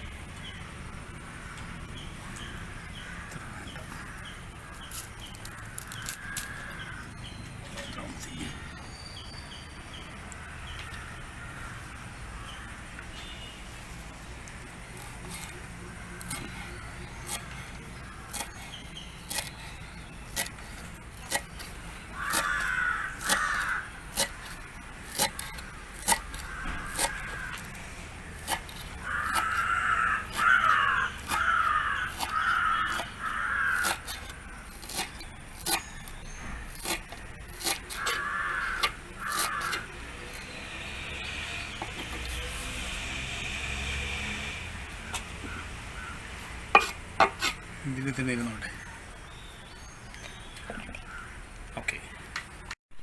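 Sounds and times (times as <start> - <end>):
crows cawing: 2.3 - 7.2, 10.3 - 12.8, 17.4 - 19.8, 21.3 - 35.1, 37.6 - 40.0, 45.0 - 46.3, 51.0 - 51.5.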